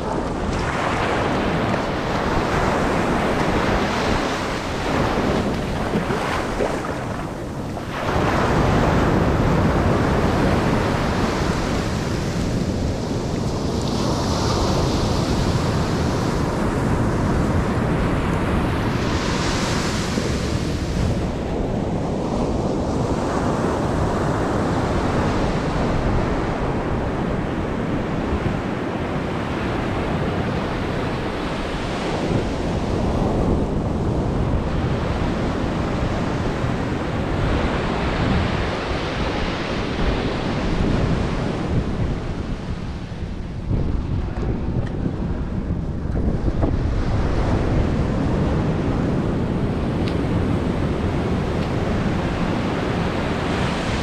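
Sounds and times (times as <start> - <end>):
sea waves breaking: 0.0 - 54.0
wind rumbling on microphone: 0.0 - 54.0.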